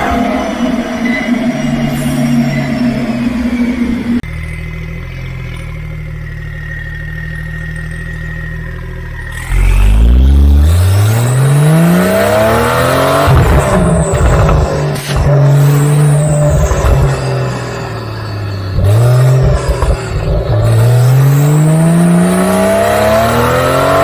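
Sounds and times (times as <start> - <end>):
car engine idling: 0.0 - 24.0
car engine revving: 0.0 - 24.0
exhaust crackle: 0.0 - 24.0.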